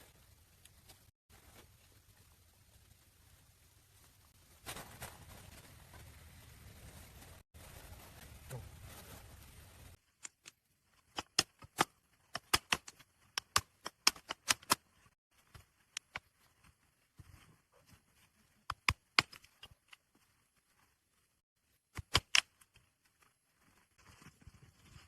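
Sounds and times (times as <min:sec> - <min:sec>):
sharp clicks and snaps: 0:10.1 - 0:15.2.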